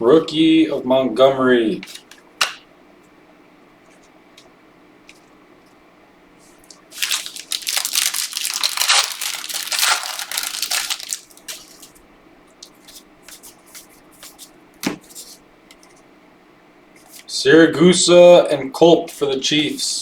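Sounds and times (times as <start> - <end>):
wrapper tearing and crinkling: 6.9 - 12.0.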